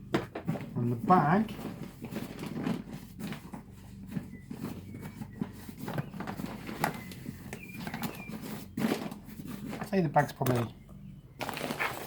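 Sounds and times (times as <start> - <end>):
vacuum dust bag knocks and rustling: 11.4 - 12.0.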